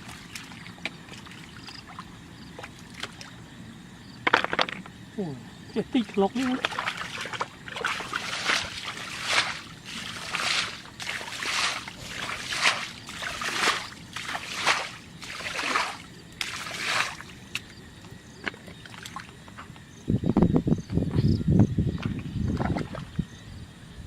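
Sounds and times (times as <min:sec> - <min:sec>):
rhythmic water splashing: 0:00.0 - 0:03.4, 0:06.0 - 0:17.8.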